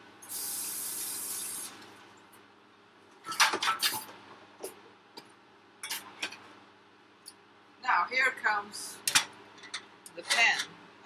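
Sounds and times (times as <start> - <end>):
kitchenware knocking and clattering: 3.3 - 4.0.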